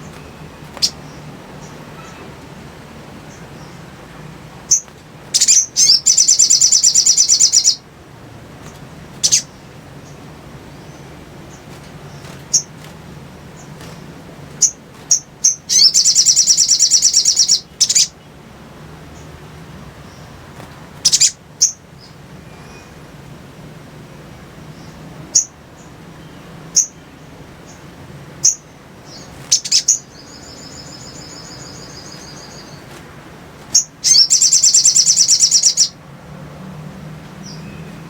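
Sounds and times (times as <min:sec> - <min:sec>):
bird calling high chips: 0:04.7 - 0:07.8, 0:09.2 - 0:10.2, 0:14.6 - 0:18.2, 0:28.4 - 0:33.0, 0:33.6 - 0:36.0
bird chattering trills: 0:04.7 - 0:07.8, 0:09.2 - 0:10.2, 0:13.6 - 0:18.2, 0:21.0 - 0:21.8, 0:28.4 - 0:32.9, 0:33.7 - 0:36.0.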